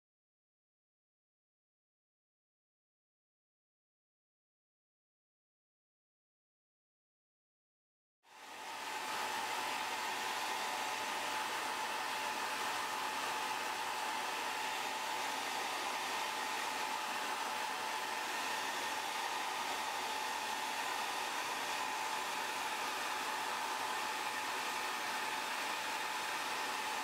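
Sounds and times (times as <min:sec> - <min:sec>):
hot-air blower rushing air: 0:08.3 - 0:27.0.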